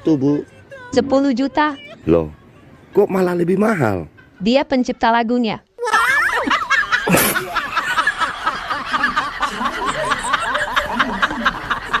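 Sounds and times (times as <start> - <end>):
laugh track: 5.8 - 12.0.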